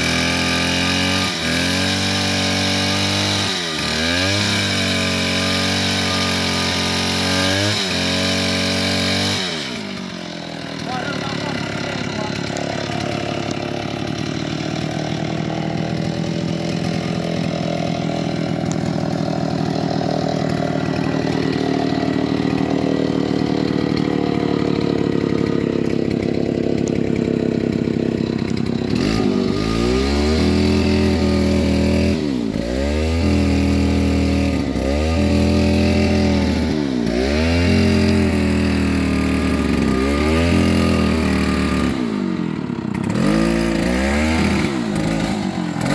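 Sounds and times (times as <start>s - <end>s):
bulldozer diesel engine running: 10.0s - 45.9s.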